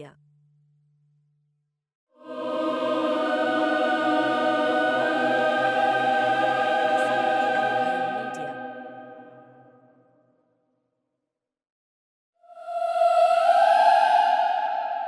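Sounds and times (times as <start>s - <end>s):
choir-like horror chord: 2.2s - 9.9s, 12.4s - 15.0s.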